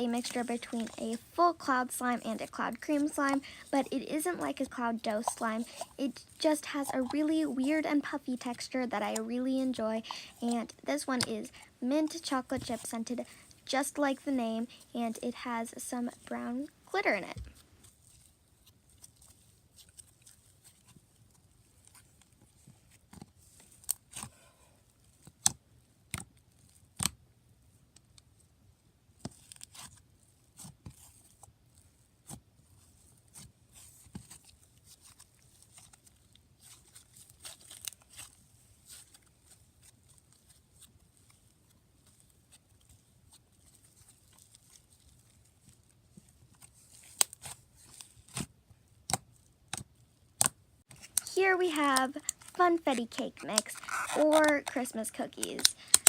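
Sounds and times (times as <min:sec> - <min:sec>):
slime tearing softly: 0:52.2 - 0:54.8.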